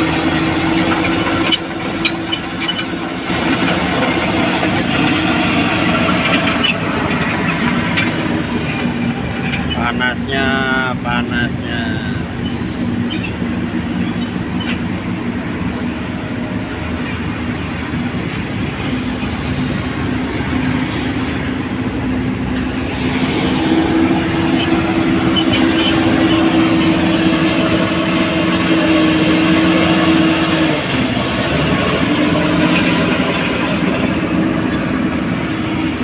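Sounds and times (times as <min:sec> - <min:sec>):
diesel earthmoving machine running: 0:00.0 - 0:36.0.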